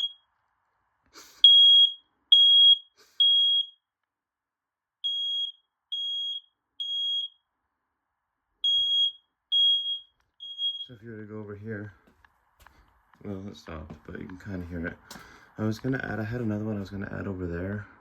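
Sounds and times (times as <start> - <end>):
smoke alarm beeping: 0.0 - 0.3, 1.4 - 3.9, 5.0 - 7.5, 8.6 - 11.0.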